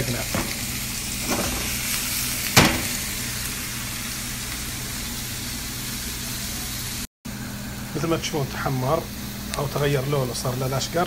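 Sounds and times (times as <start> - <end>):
onions sizzling in oil: 0.0 - 7.6
sharp knock: 2.6 - 3.0.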